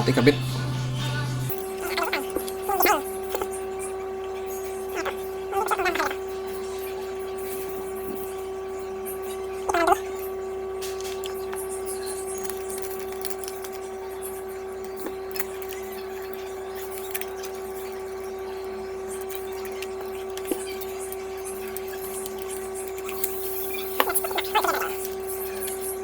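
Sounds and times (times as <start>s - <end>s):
steady hum: 0.0s - 26.0s
small metal parts clicking: 10.8s - 26.0s.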